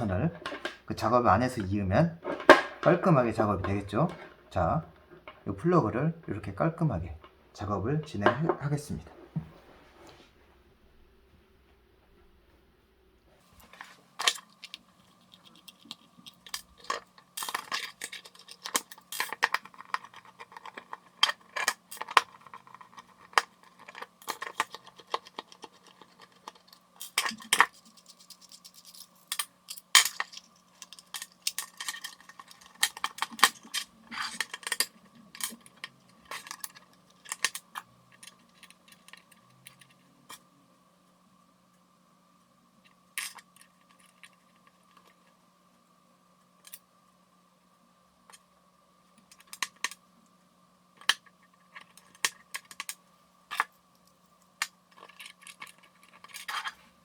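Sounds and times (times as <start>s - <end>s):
faint steady hum: 0.0s - 57.0s
small parts clicking and clinking: 13.6s - 40.4s, 42.8s - 45.3s, 51.0s - 56.8s.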